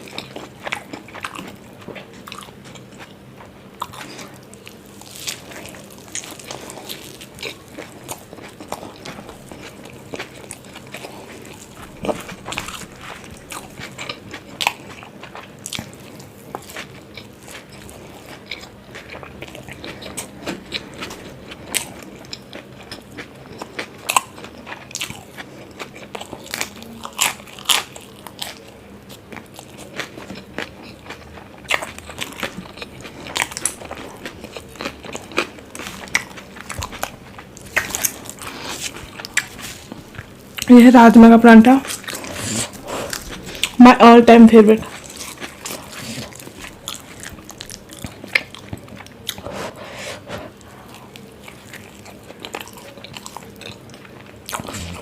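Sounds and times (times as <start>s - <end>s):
person chewing crisp food: 0.0s - 40.7s, 41.8s - 44.2s, 44.8s - 55.0s.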